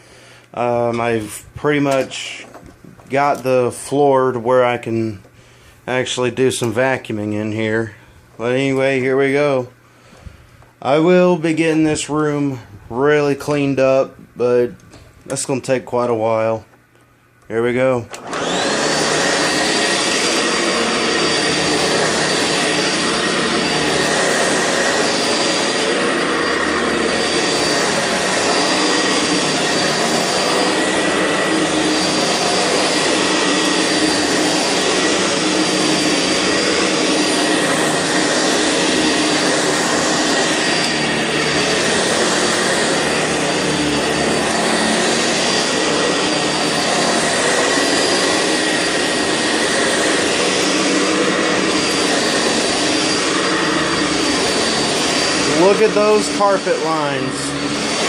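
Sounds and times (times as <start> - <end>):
upright vacuum on carpet: 0.0 - 4.4, 18.1 - 58.0.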